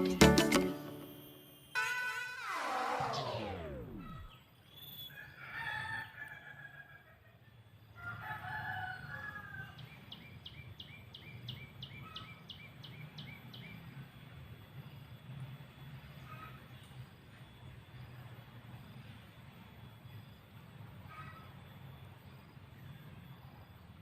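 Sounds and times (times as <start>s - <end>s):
short descending chirps: 0.0s - 4.4s.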